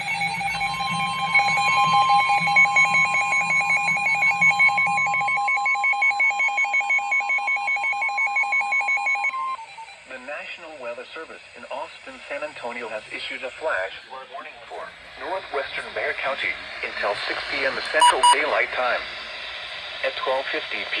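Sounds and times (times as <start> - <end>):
rapidly pulsing tone: 0.0 - 6.3
steady alert tone: 17.9 - 18.4.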